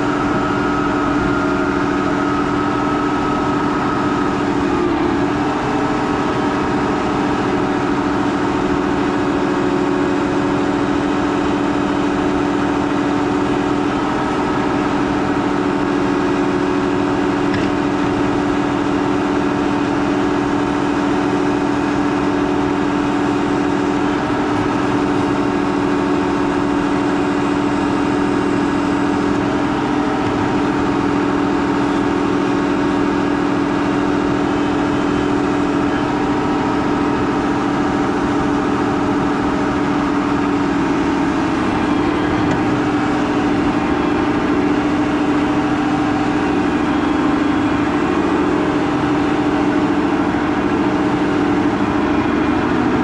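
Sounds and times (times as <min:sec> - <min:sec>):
tractor engine running steadily: 0:00.0 - 0:53.0.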